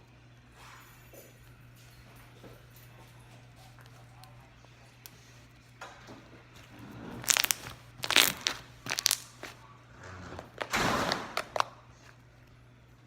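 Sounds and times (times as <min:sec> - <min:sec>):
slime crackling and squelching: 0:07.1 - 0:09.6
air pockets popping: 0:07.2 - 0:09.5.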